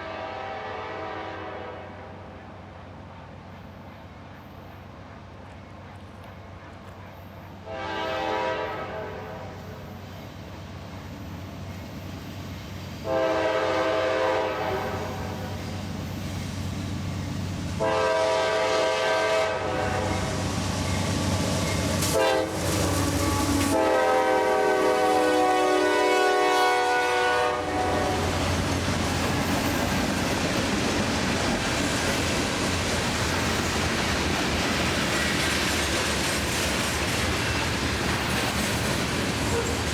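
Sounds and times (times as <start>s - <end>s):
locomotive air horn blasts: 0.0s - 2.2s, 7.6s - 9.8s, 13.0s - 15.6s, 17.8s - 20.4s, 22.0s - 28.6s
train wheels rumbling on rails: 2.3s - 39.9s.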